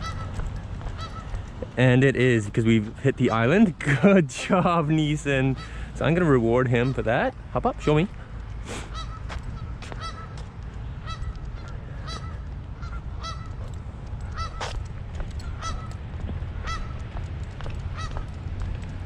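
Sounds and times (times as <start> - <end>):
geese honking: 0.0 - 1.8, 2.6 - 8.1, 8.8 - 14.8, 15.4 - 16.0, 16.6 - 17.1, 17.8 - 18.4
steady low rumble: 0.0 - 19.0.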